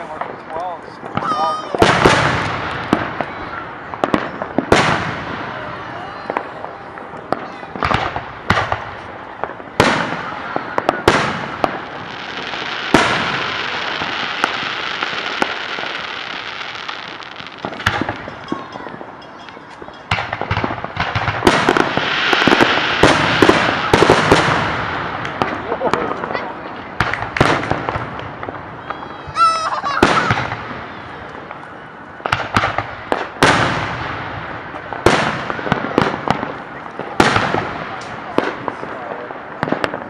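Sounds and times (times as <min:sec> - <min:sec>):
firework bangs with echo: 0:00.0 - 0:29.3, 0:29.9 - 0:31.6, 0:32.2 - 0:40.0
rapid firework pops: 0:07.2 - 0:16.4, 0:27.0 - 0:28.7, 0:32.2 - 0:34.2, 0:34.8 - 0:40.0
firework hiss: 0:20.8 - 0:26.3.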